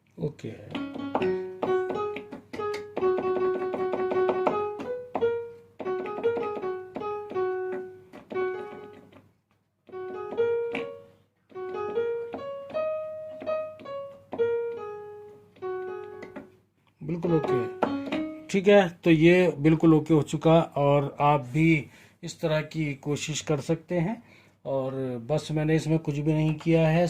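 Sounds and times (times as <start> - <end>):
piano notes on a keyboard: 0.4 - 20.3.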